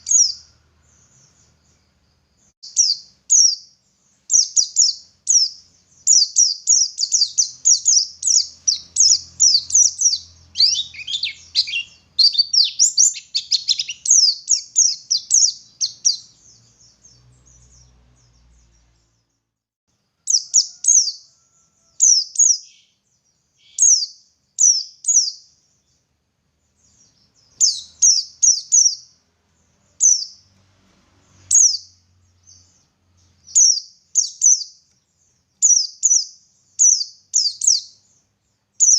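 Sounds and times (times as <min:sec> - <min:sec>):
bird chirping high thin notes: 0:04.3 - 0:16.9.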